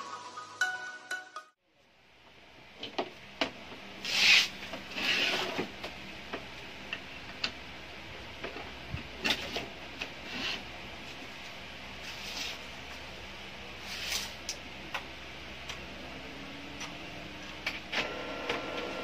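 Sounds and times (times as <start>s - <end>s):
printer mechanism running: 17.6s - 19.0s.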